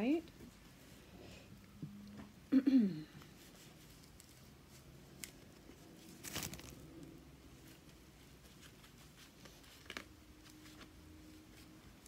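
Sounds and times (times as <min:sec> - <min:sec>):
packaging rustle: 0:05.2 - 0:07.2.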